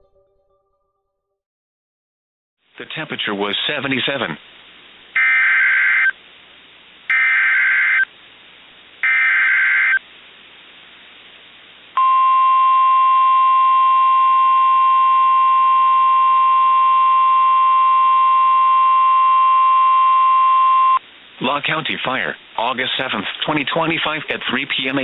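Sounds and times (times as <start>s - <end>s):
steady alarm tone: 5.2s - 6.1s, 7.1s - 8.1s, 9.0s - 10.0s.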